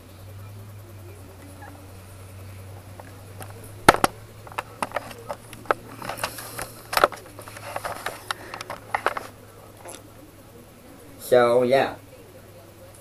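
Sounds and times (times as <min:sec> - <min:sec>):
low steady hum: 0:00.0 - 0:13.0
objects clicking and knocking: 0:02.9 - 0:10.0.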